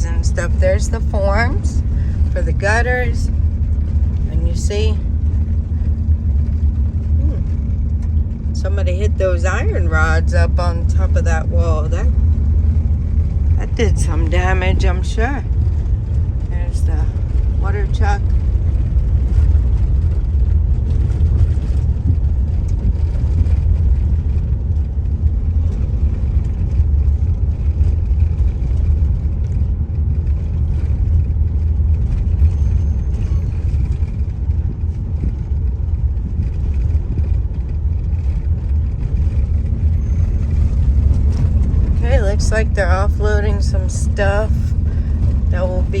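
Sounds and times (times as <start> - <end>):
car engine and tyre rumble: 0.0 - 46.0.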